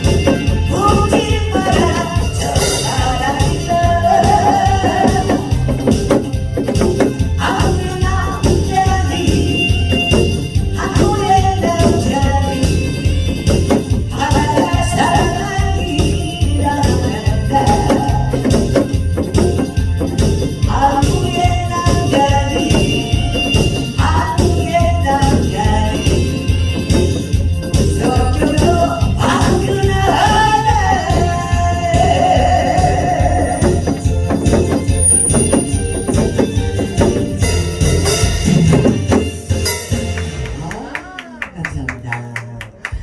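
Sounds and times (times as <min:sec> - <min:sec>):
person singing karaoke: 0:00.0 - 0:37.4
backing track with steady beat: 0:00.0 - 0:43.0
tambourine jingling: 0:33.4 - 0:40.8.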